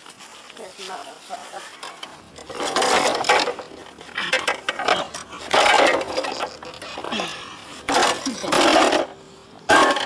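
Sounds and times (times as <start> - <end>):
metal clanking: 2.0 - 10.0.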